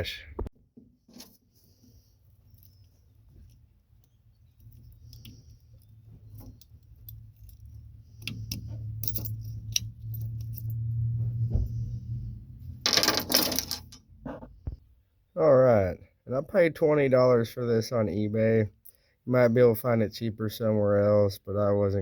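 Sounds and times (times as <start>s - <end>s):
metal parts clicking: 2.4s - 10.7s, 12.9s - 14.0s
keys jangling: 2.4s - 10.9s.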